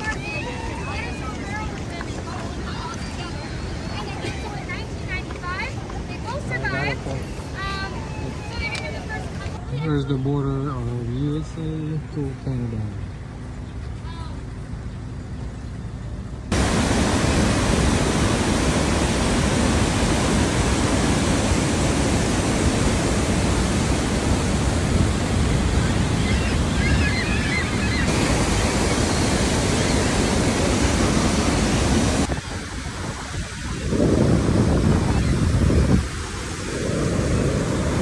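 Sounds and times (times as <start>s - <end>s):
roar of rushing waterfall: 16.5s - 38.0s
wind on microphone: 16.5s - 38.0s.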